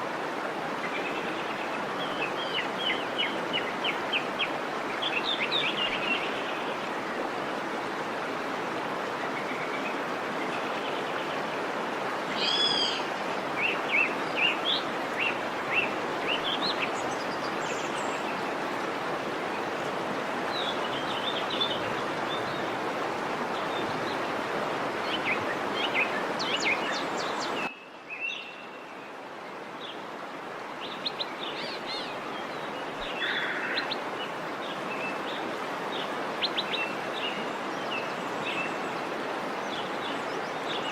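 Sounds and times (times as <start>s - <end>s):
waterfall rushing: 0.0s - 27.7s, 29.5s - 40.9s.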